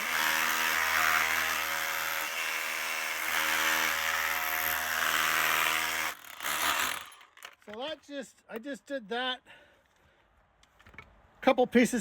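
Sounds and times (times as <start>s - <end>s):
power tool breaking concrete: 0.0s - 7.5s.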